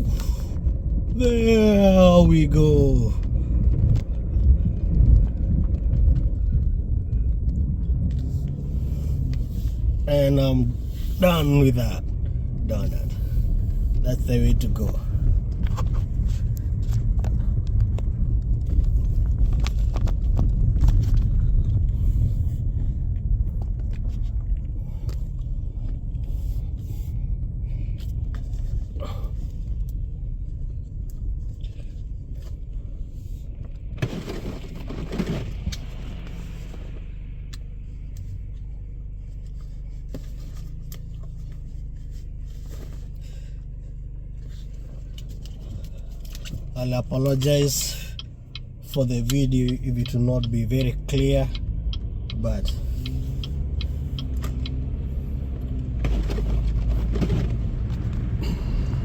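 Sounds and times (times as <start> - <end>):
car engine and tyres rumbling: 0.0 - 59.0.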